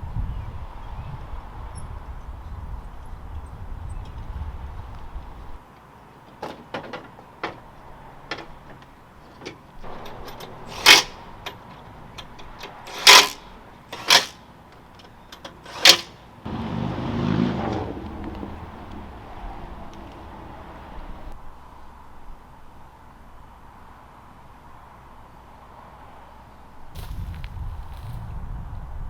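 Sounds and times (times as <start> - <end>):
scattered clicks and knocks: 8.3 - 16.2
loud sharp clanks: 9.8 - 14.4, 15.3 - 16.2.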